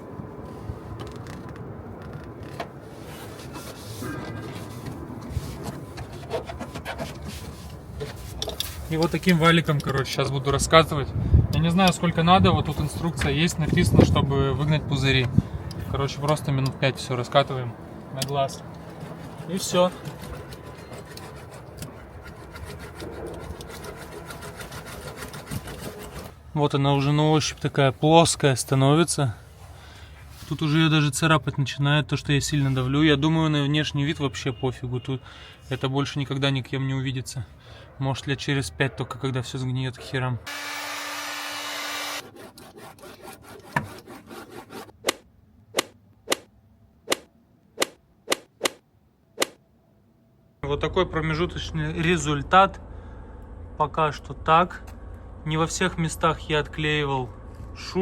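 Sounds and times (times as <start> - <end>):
hand roller rasping on foil sheet: 18.9 - 26.4, 42.2 - 45.0.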